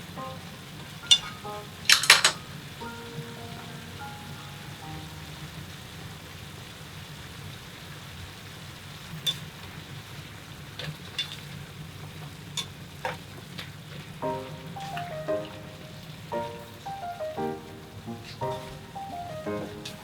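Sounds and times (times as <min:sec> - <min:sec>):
food sizzling in a frying pan: 0:00.0 - 0:20.0
utensil clicking against pan: 0:12.5 - 0:13.2.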